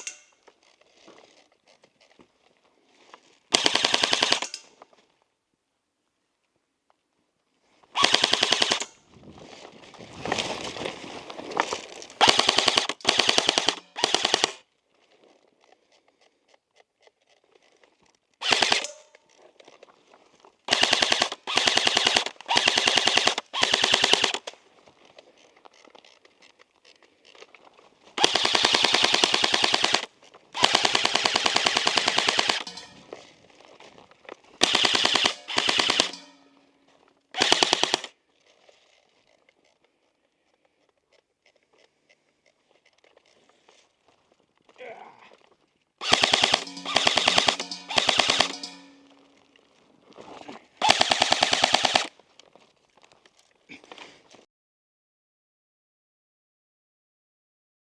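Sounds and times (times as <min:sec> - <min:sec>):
airsoft rifle firing bursts: 0:03.5 - 0:04.6, 0:08.0 - 0:08.9, 0:12.2 - 0:14.6, 0:18.4 - 0:19.0, 0:20.7 - 0:24.5, 0:28.2 - 0:32.9, 0:34.6 - 0:36.4, 0:37.3 - 0:38.1, 0:46.0 - 0:49.1, 0:50.8 - 0:52.1.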